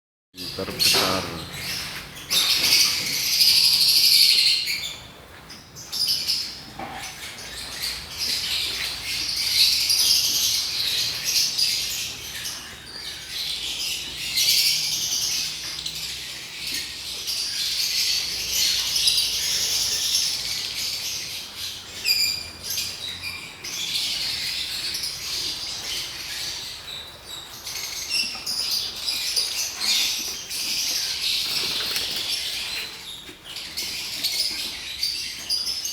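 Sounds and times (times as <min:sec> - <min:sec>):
lovebirds chattering: 0:00.4 - 0:35.9.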